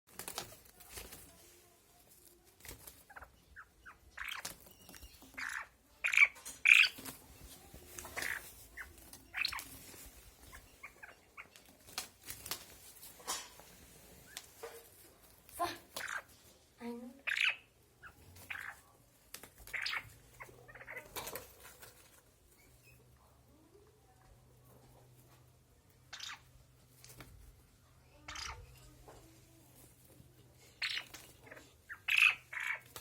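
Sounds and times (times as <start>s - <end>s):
partridges calling: 3.1s - 7.3s, 8.0s - 11.7s, 17.2s - 18.9s, 19.7s - 21.2s, 26.1s - 26.5s, 30.7s - 33.0s.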